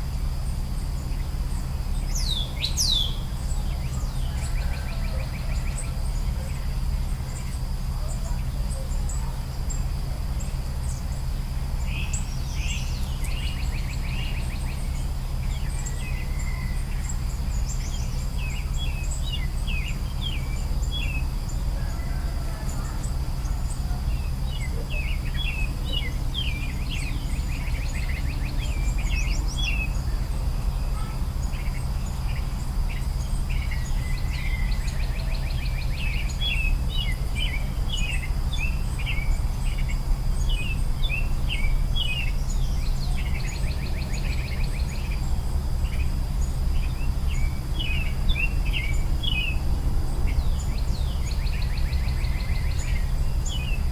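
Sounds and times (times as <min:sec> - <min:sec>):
faint high hum: 0:00.0 - 0:53.9
songbirds chirping: 0:00.0 - 0:53.9.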